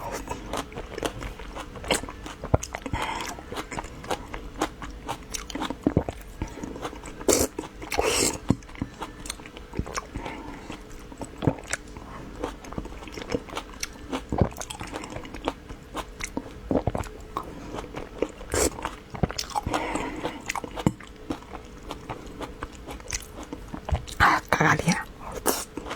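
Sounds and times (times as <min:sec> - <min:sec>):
chewing pastries: 0:00.0 - 0:25.9.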